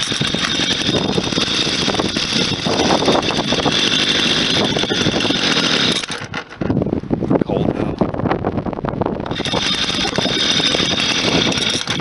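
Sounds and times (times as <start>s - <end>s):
chainsaw engine running: 0.0s - 6.7s, 9.2s - 12.0s.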